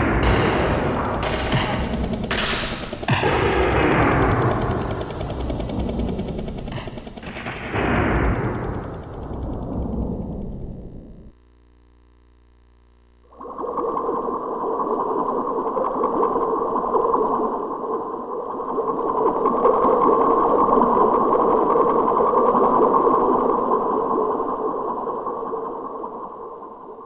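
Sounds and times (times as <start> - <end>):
synthesized crackling noise: 0.0 - 13.3.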